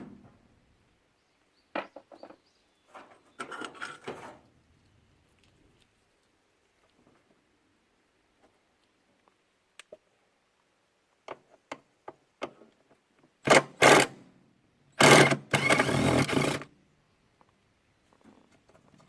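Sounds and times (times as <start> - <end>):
power driver motor whirring: 15.0 - 16.6.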